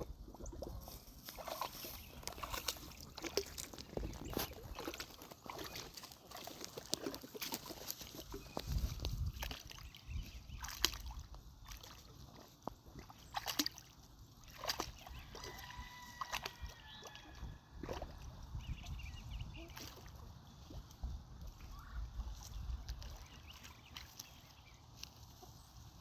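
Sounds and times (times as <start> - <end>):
dog splashing in water: 1.3 - 8.4, 9.3 - 18.2.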